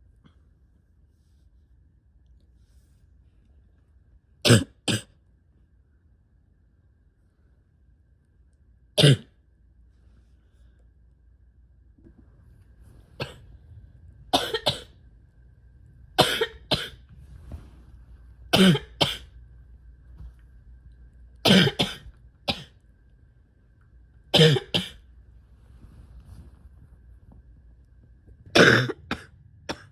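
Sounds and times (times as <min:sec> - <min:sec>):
person coughing: 0:04.4 - 0:05.1, 0:09.0 - 0:09.4, 0:13.2 - 0:13.4, 0:14.4 - 0:14.9, 0:16.2 - 0:17.0, 0:18.6 - 0:19.3, 0:21.4 - 0:22.7, 0:24.4 - 0:25.0, 0:28.5 - 0:29.9.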